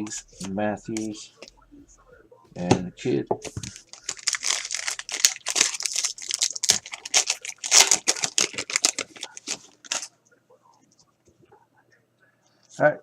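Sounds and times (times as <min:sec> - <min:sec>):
foil wrapper crinkling: 0:03.6 - 0:10.1.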